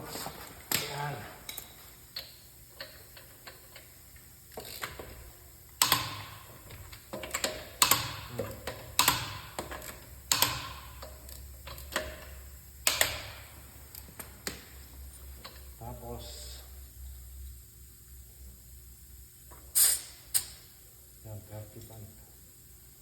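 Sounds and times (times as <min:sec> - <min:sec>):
hand tools clicking and knocking: 0:05.8 - 0:13.2.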